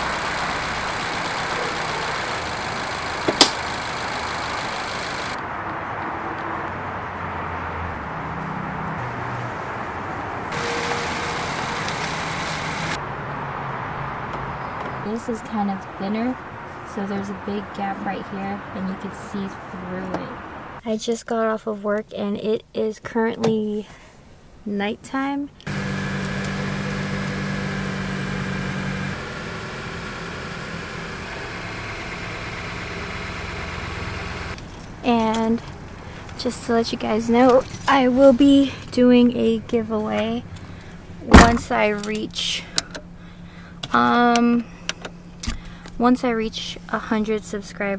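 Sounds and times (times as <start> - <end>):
car engine idling: 0.0 - 5.4, 10.5 - 13.0, 25.6 - 46.0.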